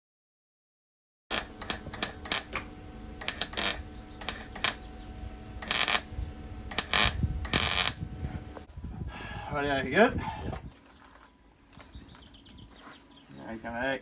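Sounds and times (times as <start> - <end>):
short scraping bursts: 5.6 - 6.1, 6.7 - 8.0.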